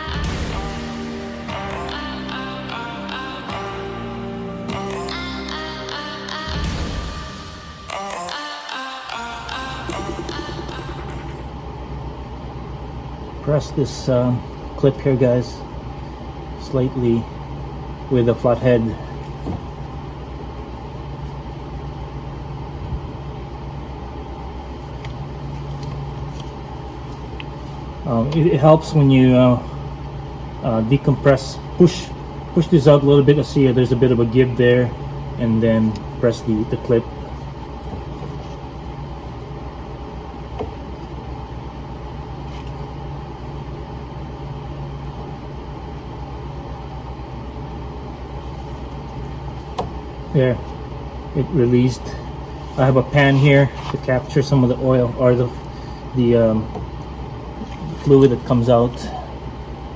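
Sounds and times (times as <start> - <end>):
low mechanical hum: 0.0 - 59.9.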